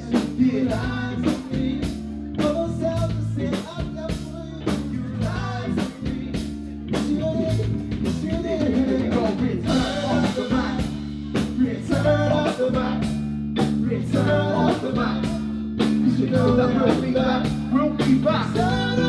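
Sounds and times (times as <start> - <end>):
bass guitar: 0.0 - 19.0
drum kit beat: 0.0 - 19.0
electric guitar: 0.0 - 19.0
person singing: 0.0 - 19.0.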